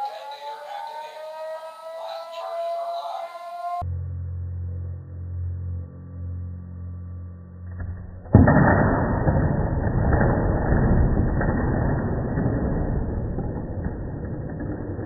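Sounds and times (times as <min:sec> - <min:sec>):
low steady drone: 0:00.0 - 0:15.0
toy pieces crashing and clattering: 0:08.4 - 0:15.0.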